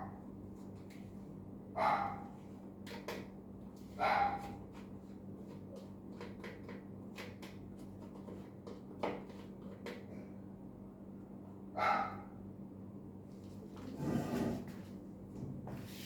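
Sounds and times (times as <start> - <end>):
dog barking: 1.8 - 2.3, 4.0 - 4.6, 11.8 - 12.4.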